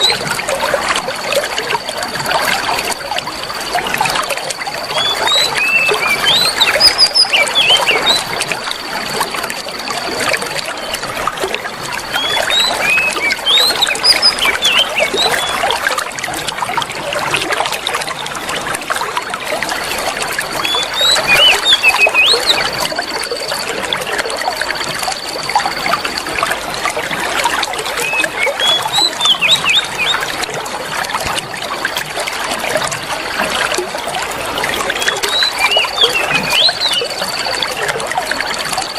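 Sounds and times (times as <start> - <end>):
thin high steady tone: 0.0 - 16.1, 34.5 - 38.9
trickling water: 0.0 - 38.9
small birds chirping: 4.8 - 8.8, 12.1 - 15.8, 20.6 - 23.7, 27.8 - 30.4, 34.9 - 37.9.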